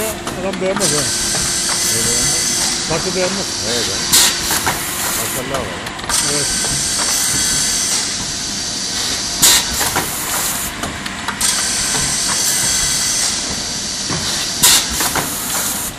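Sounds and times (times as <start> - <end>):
boring machine hissing: 0.0 - 15.9
sharp air blasts: 0.8 - 10.8, 11.4 - 15.9.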